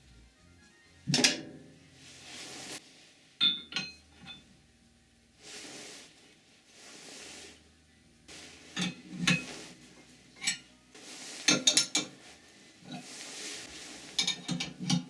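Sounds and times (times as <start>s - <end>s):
ringing metal clank: 3.4s - 4.5s.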